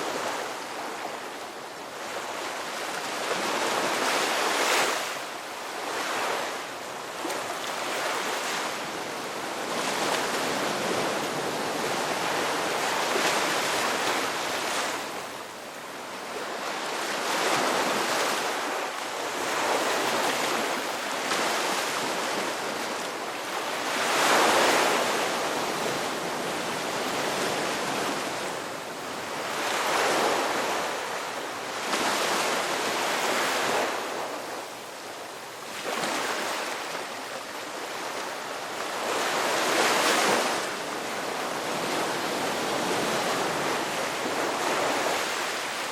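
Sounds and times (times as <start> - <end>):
ocean waves breaking: 35.6 - 45.9.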